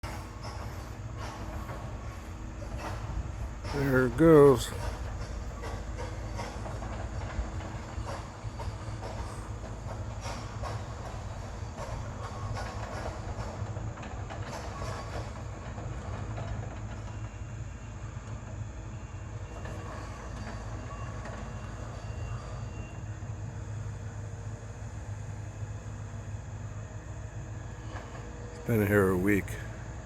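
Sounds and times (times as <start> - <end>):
steel tracks clattering: 0.0 - 30.0
diesel engine drone: 3.2 - 5.1.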